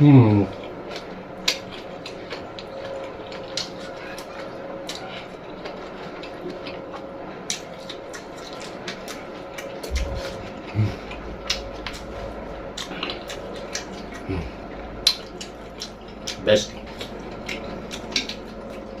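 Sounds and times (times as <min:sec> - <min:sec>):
chewing food: 0:00.2 - 0:19.0
wet mouth clicks and smacks: 0:15.0 - 0:18.8.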